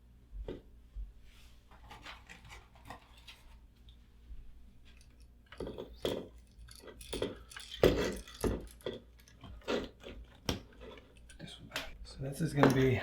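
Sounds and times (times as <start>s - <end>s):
tools and wires clicking and rattling: 4.8s - 13.0s.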